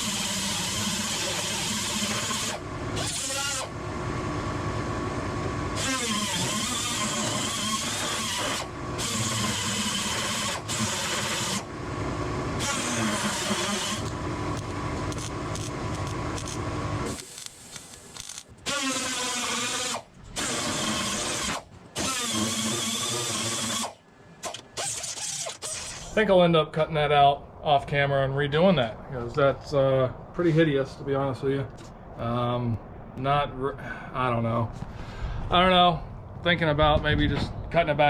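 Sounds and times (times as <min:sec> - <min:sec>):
power tool cutting sheet metal: 0:00.0 - 0:03.7, 0:05.8 - 0:11.7, 0:12.6 - 0:14.1, 0:18.2 - 0:26.1.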